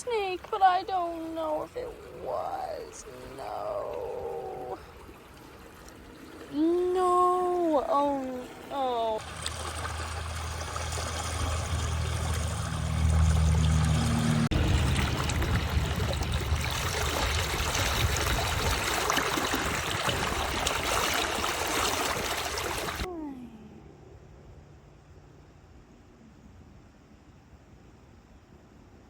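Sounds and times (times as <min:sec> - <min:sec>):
water running and trickling: 0:00.0 - 0:23.1
low hum: 0:01.0 - 0:19.1, 0:22.3 - 0:29.0.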